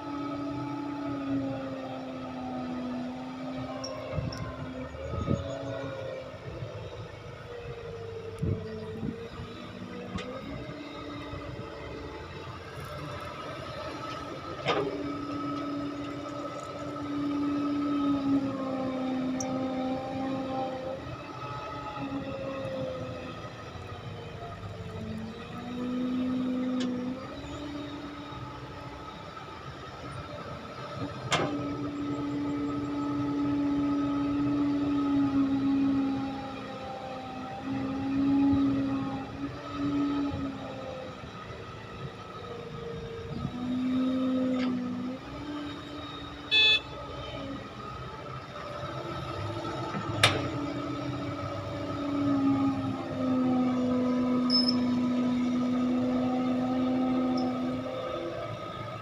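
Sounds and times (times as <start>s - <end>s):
excavator engine and hydraulics: 0.0s - 59.0s
short horn toot: 46.5s - 47.0s.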